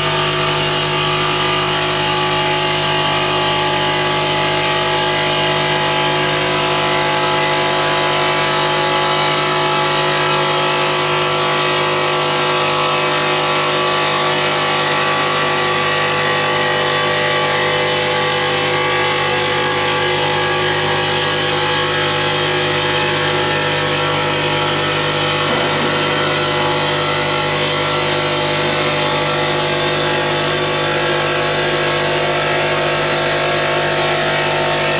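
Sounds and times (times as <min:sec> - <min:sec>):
motor hum with whining tones: 0:00.0 - 0:34.9
grinding hiss: 0:24.5 - 0:30.8.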